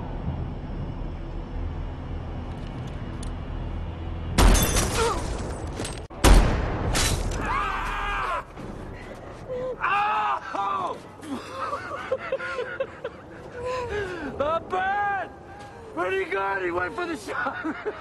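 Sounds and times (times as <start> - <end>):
low rumble: 0.0 - 4.7.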